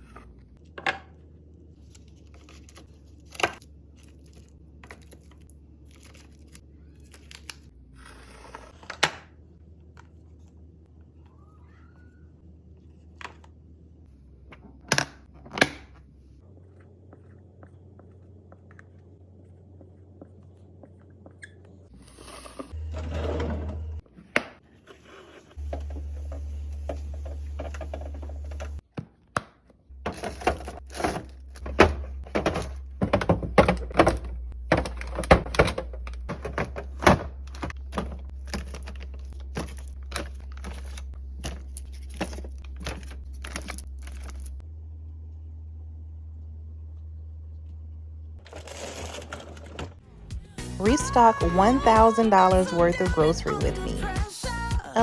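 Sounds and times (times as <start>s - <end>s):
items knocking into a fridge: 30.0s - 39.9s.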